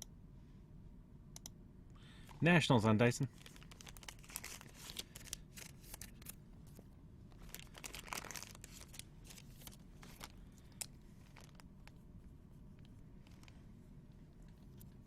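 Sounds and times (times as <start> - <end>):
wrapper crinkling and tearing: 3.3 - 6.4, 7.3 - 12.0.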